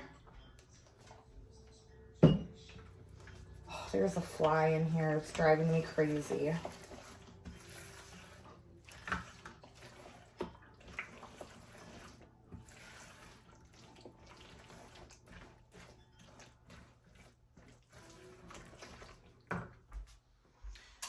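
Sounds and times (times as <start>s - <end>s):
wet squishing: 3.0s - 19.8s.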